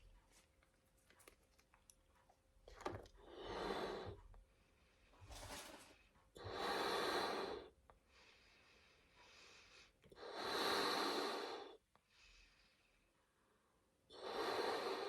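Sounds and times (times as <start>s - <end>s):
person breathing: 6.4s - 15.0s.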